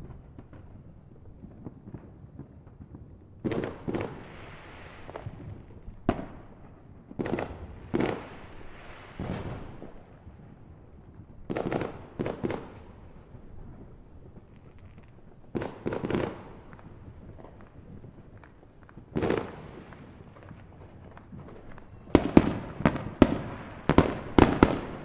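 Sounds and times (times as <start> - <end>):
fireworks booming and crackling: 0.0 - 25.0
sharp firework crack: 7.2 - 10.2.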